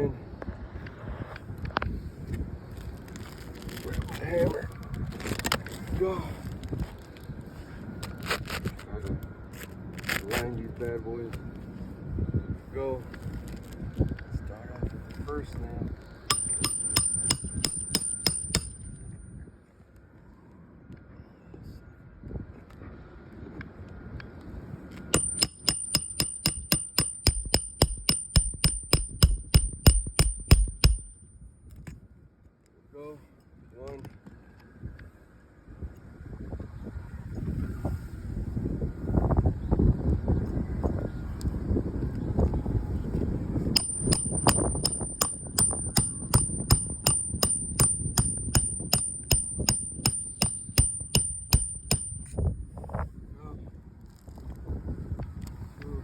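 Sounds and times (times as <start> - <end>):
hammer striking roofing nail: 16.3 - 19.2, 25.2 - 31.2, 43.8 - 52.5.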